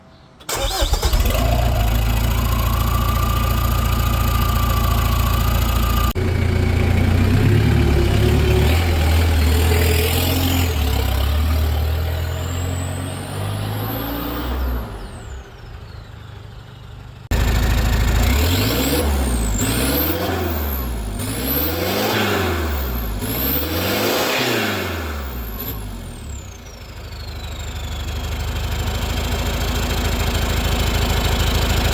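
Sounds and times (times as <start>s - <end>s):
diesel engine revving: 0.4s - 31.9s
turbocharger whistle: 0.5s - 6.2s.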